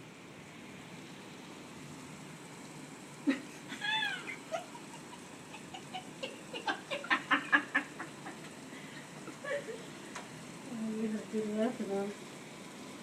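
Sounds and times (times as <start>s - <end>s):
person laughing high-pitched: 3.3s - 8.4s, 9.4s - 9.9s.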